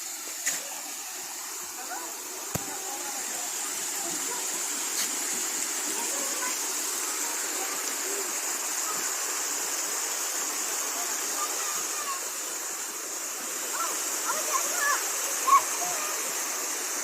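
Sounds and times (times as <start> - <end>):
running water rushing: 0.0 - 17.0
faint voices: 0.5 - 9.6.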